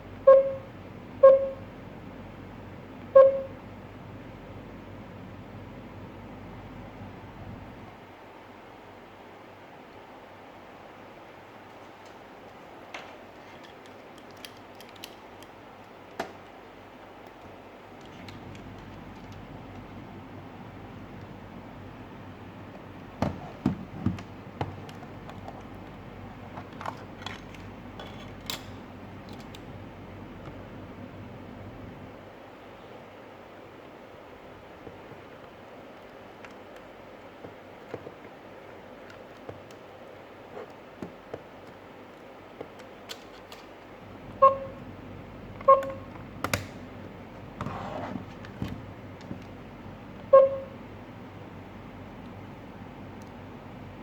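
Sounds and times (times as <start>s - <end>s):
short electronic beeps: 0.3s - 1.6s, 3.2s - 3.6s, 44.4s - 44.8s, 50.3s - 50.7s.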